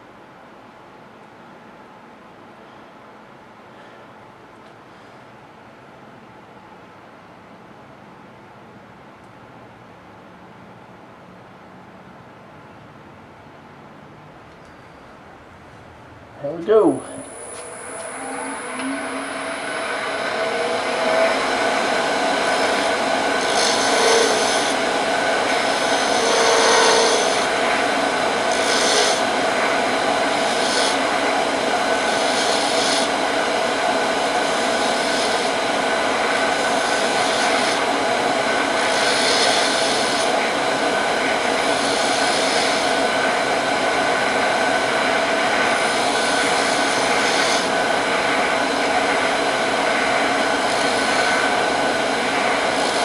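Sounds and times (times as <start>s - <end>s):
lathe motor hum: 16.5s - 53.0s
turning tool hissing on wood: 21.3s - 31.2s, 31.8s - 33.2s, 34.4s - 35.6s, 36.5s - 38.0s, 38.8s - 40.3s, 41.6s - 43.0s, 45.7s - 47.8s, 50.4s - 53.0s.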